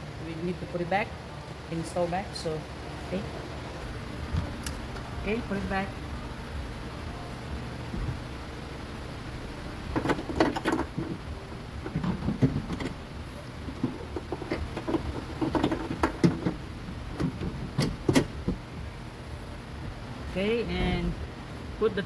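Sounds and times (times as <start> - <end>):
plastic handle housing clicks and knocks: 9.9 - 11.2, 13.7 - 18.6.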